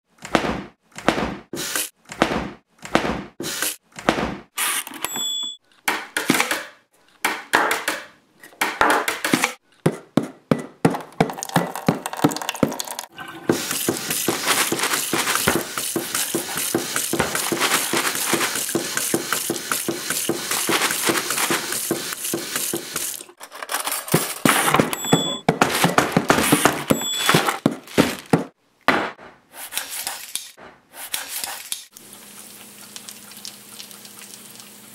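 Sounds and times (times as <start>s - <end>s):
dishes and pots knocked in rhythm: 8.6s - 23.2s.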